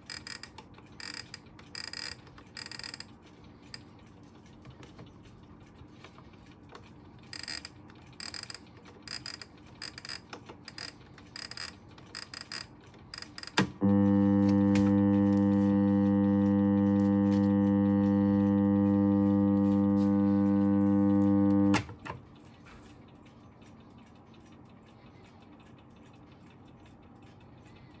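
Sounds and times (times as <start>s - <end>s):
alarm buzzing tone: 13.2s - 21.9s.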